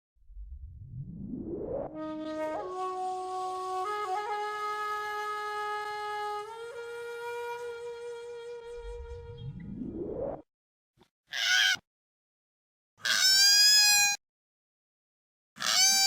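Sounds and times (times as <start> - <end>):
rising whoosh: 0.2 - 1.9, 8.8 - 10.4
cartoon crying wail: 15.6 - 16.0.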